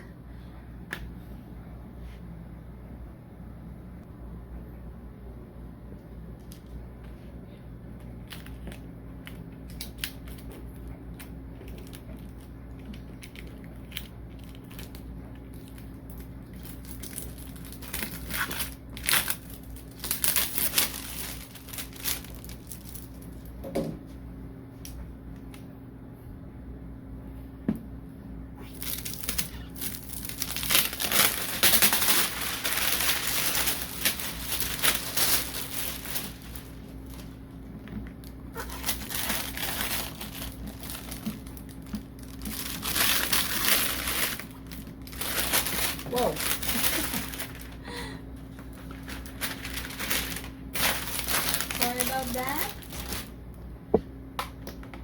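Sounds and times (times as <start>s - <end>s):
plastic packaging crinkling: 8.0s - 23.6s, 28.7s - 53.5s.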